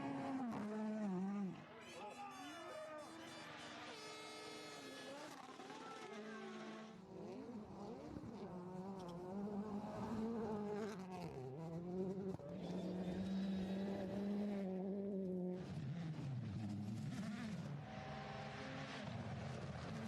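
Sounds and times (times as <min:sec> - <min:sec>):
rally car engine revving: 0:00.0 - 0:01.9, 0:03.2 - 0:20.0.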